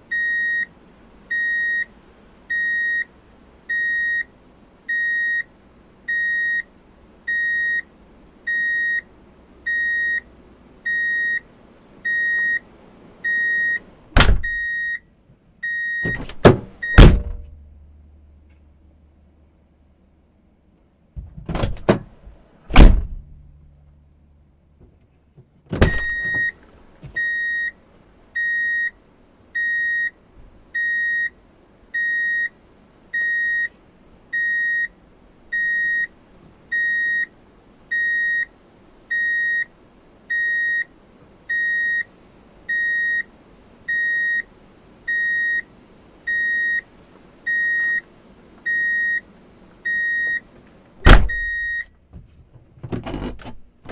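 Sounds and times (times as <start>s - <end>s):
reverse warning beeper: 1.3s - 1.9s, 2.5s - 3.1s, 3.7s - 4.3s, 4.9s - 5.5s, 6.1s - 6.7s, 7.3s - 7.9s, 8.5s - 9.1s, 9.7s - 10.3s, 10.9s - 11.5s, 12.1s - 12.6s, 13.2s - 13.8s, 14.4s - 15.0s, 25.9s - 26.6s, 27.2s - 27.8s, 28.4s - 29.0s, 32.0s - 32.6s, 33.2s - 33.7s, 34.4s - 34.9s, 35.6s - 36.1s, 36.7s - 37.3s, 37.9s - 38.5s, 40.3s - 40.9s, 42.7s - 43.3s, 45.1s - 45.7s, 46.3s - 46.8s, 47.5s - 48.0s, 48.7s - 49.3s, 51.1s - 51.9s
sharp knocks: 16.1s - 17.6s.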